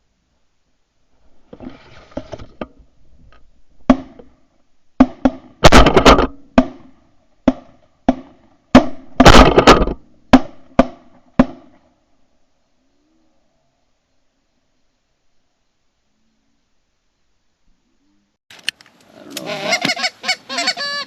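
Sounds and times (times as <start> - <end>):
shotgun blasts: 5.0 - 11.8.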